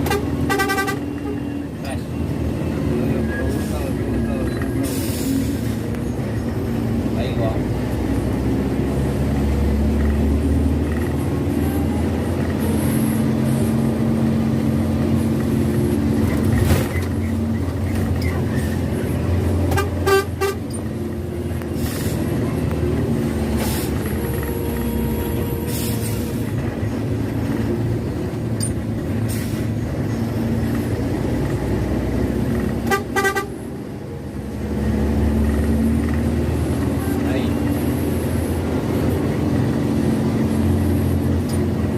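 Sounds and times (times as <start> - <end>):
bus horn toots: 0.0 - 1.6, 19.6 - 20.8, 32.7 - 33.7
bus diesel engine running: 0.0 - 41.9.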